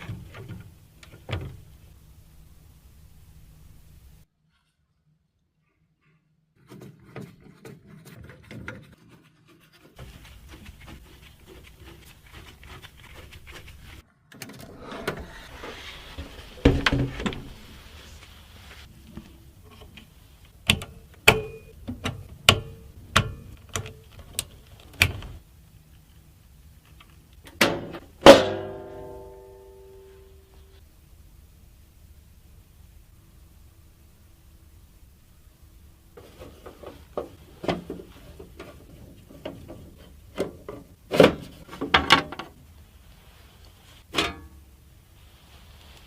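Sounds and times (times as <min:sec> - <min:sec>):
hands rustling components: 0:06.6 - 0:14.0.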